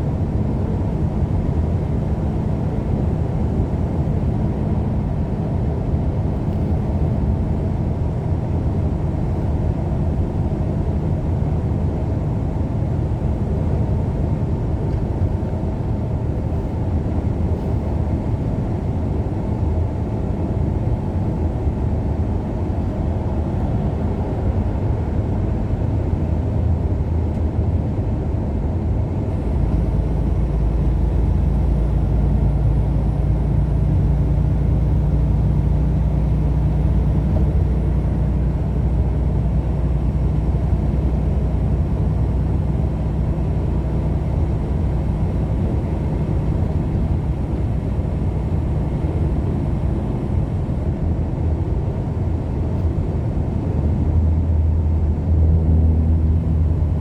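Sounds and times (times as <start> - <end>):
vehicle road and engine rumble: 0.0 - 57.0
steady low hum: 19.8 - 57.0.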